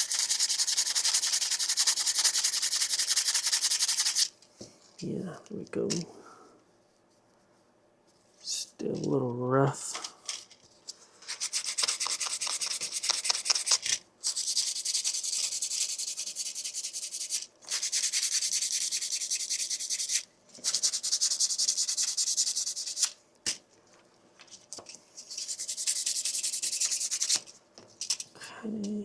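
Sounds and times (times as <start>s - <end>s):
sandpaper sanding plastic: 0.0s - 4.3s, 11.3s - 23.2s, 25.2s - 28.2s.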